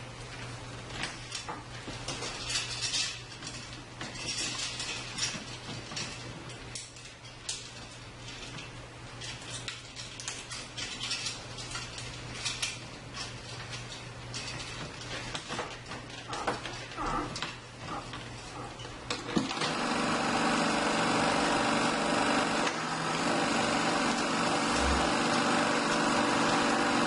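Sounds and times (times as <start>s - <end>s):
low electrical hum: 0.0s - 26.9s
film projector clattering: 14.4s - 27.0s.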